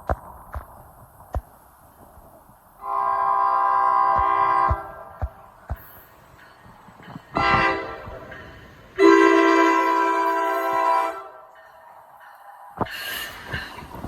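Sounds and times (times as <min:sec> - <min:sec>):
locomotive air horn blasts: 0:02.8 - 0:05.2, 0:07.3 - 0:08.3, 0:09.0 - 0:11.5.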